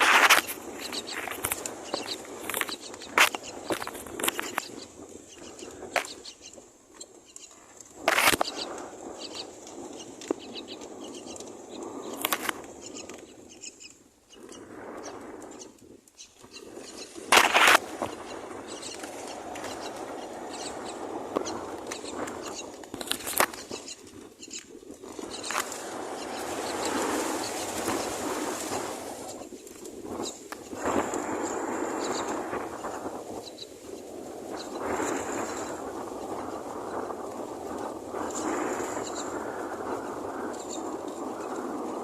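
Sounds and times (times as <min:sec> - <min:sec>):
wings fluttering: 0:00.0 - 0:42.0
bird chicks calling: 0:00.1 - 0:07.6, 0:12.8 - 0:24.6, 0:25.2 - 0:28.5.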